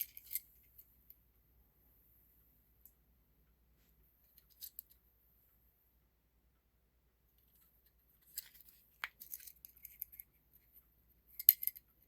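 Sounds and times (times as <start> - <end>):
handling scrapes and clicks: 7.4 - 10.8.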